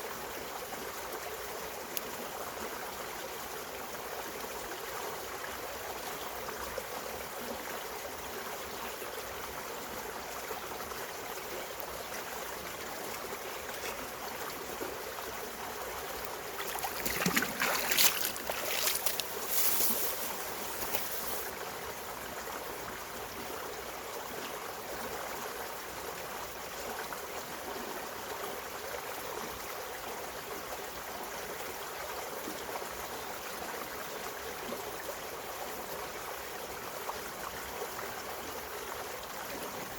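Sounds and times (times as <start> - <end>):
stream running over rocks: 0.0 - 39.9.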